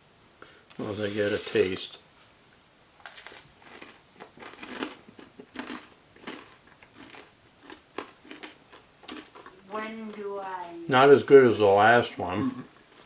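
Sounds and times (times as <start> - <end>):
crunching chocolate bar: 3.0 - 9.6.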